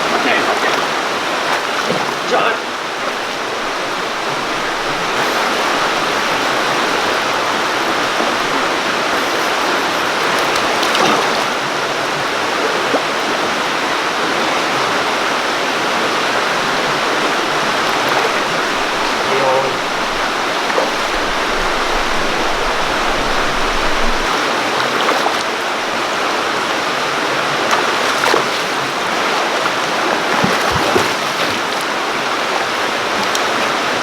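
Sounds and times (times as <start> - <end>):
creek water rushing: 0.0 - 34.0.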